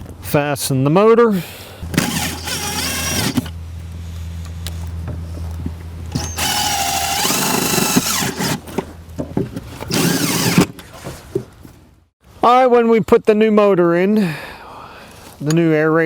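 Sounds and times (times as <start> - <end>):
steady low hum: 1.4 - 10.8
cordless drill running: 1.9 - 3.5, 6.1 - 8.8, 9.9 - 10.7.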